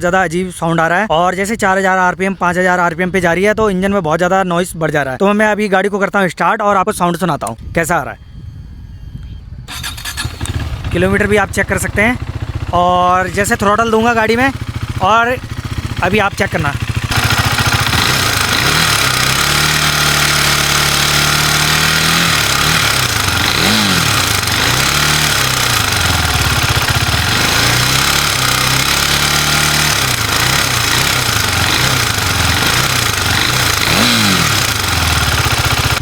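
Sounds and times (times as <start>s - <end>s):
motorcycle engine revving: 9.7s - 36.0s
mechanical noise inside engine: 16.8s - 36.0s.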